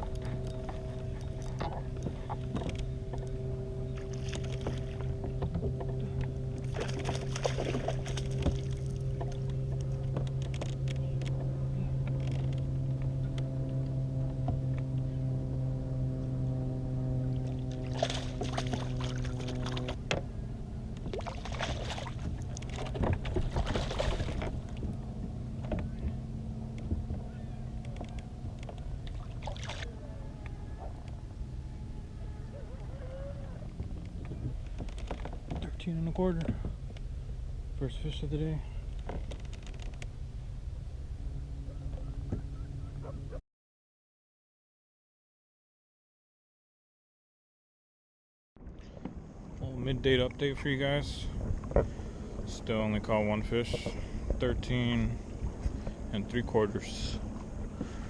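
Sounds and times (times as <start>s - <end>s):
low hum: 0.0s - 43.4s, 48.6s - 58.0s
water splashing: 6.6s - 9.5s, 17.4s - 20.0s, 21.0s - 24.9s, 29.0s - 30.0s.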